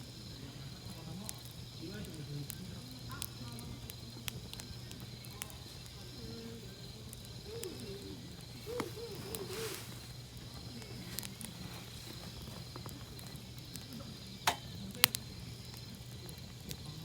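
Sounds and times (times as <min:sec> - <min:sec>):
campfire crackling: 0:00.0 - 0:17.0
crickets chirping: 0:00.0 - 0:17.0
distant voices: 0:00.0 - 0:17.0.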